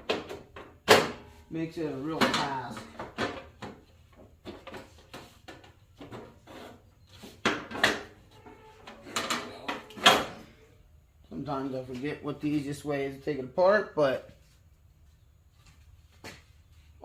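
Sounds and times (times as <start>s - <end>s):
tractor parts clunking: 2.1s - 6.5s, 7.4s - 10.5s.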